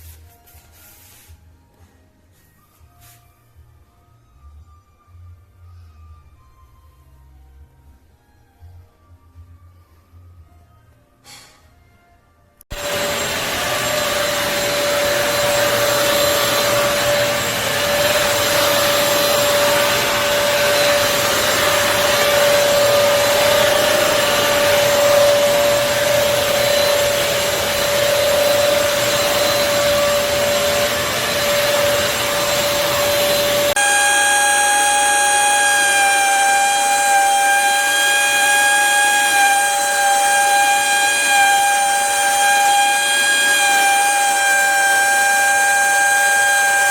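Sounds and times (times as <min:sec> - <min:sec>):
floor cleaner motor whine: 0:12.7 - 0:46.9.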